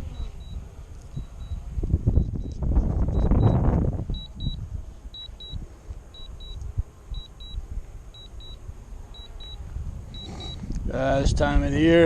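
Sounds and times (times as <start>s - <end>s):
short high beeps: 0.0s - 1.6s, 2.2s - 4.6s, 5.2s - 5.6s, 6.2s - 7.6s, 8.2s - 8.6s, 9.2s - 9.6s, 10.2s - 10.6s
wind rumbling on microphone: 0.0s - 12.0s.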